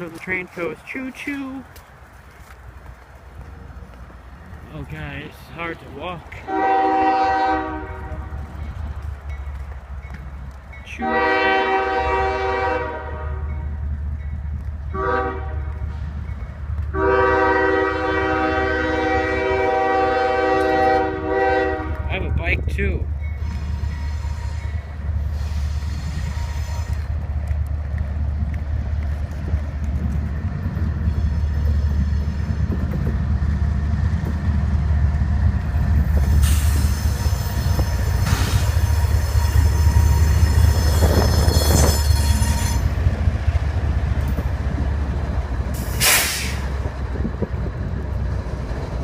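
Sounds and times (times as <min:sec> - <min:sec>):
train rumbling past: 0:00.0 - 0:49.0
steel wheel squeal: 0:36.2 - 0:43.0.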